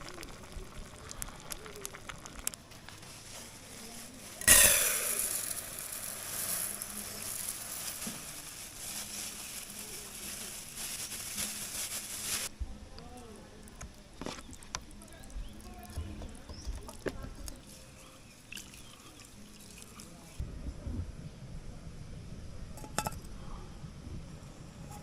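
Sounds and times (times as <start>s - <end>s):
campfire crackling: 0.0s - 20.4s
loud steam hiss: 3.6s - 12.5s.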